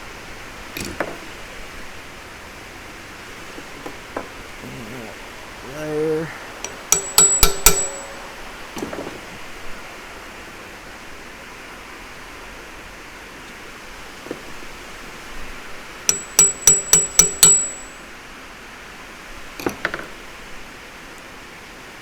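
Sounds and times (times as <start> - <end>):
hammer tapping on steel: 6.6 - 8.9, 16.1 - 18.1.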